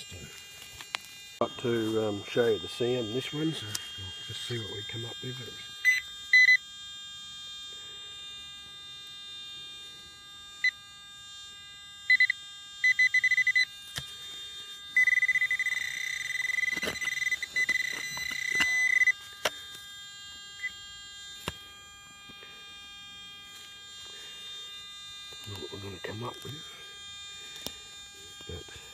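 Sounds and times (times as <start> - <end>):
crackly buzzing tone: 0.0 - 28.9
metal detector beeps: 1.5 - 6.6, 12.1 - 13.7, 14.9 - 19.6.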